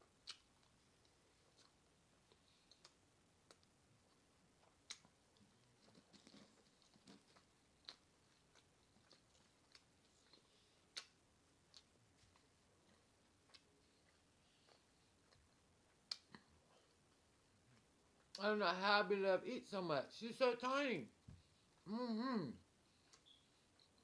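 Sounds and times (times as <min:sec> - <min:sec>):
person chewing food: 0:00.0 - 0:18.4.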